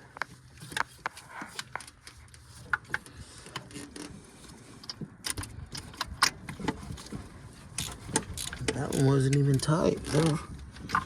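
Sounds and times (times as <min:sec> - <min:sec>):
metallic clicks of tools: 0:07.8 - 0:10.2.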